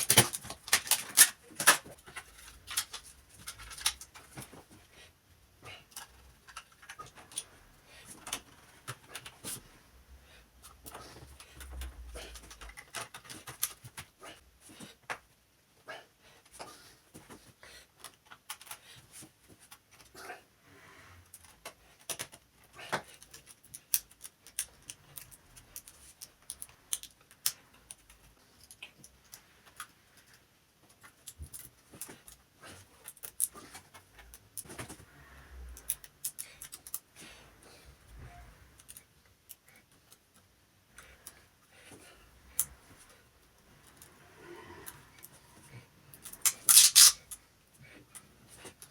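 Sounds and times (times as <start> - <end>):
small clicks and taps of tools: 21.3 - 32.4.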